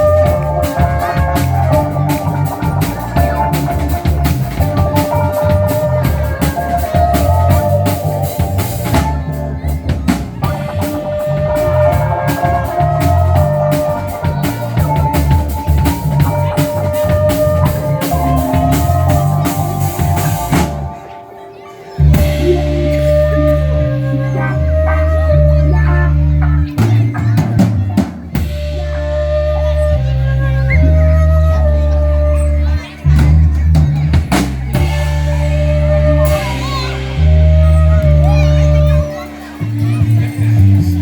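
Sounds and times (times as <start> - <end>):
band song with drum kit: 0.0 - 41.0.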